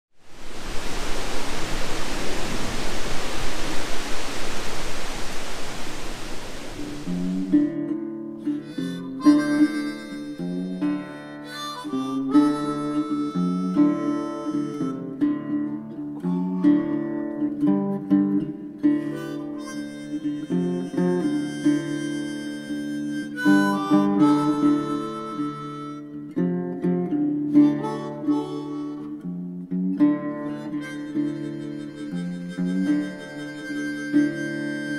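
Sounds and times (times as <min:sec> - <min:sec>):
loud steady rushing noise: 0:00.2 - 0:07.4
harmonica sustained notes: 0:06.1 - 0:17.9, 0:18.7 - 0:34.9
strummed acoustic guitar: 0:07.1 - 0:34.9.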